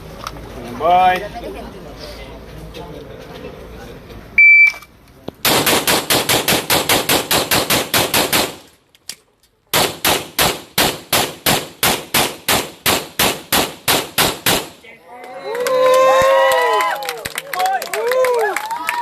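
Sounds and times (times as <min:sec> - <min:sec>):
shot timer beep: 0:04.4 - 0:04.9
rapid pistol shots: 0:05.4 - 0:08.7, 0:09.7 - 0:14.8.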